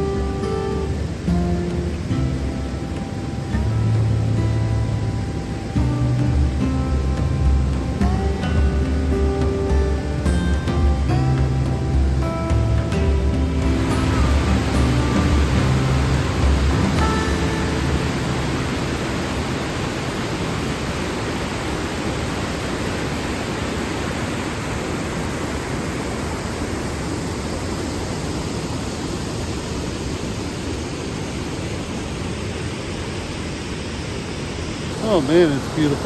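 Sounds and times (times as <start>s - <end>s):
background music: 0.0s - 19.8s
waterfall rushing: 0.0s - 36.0s.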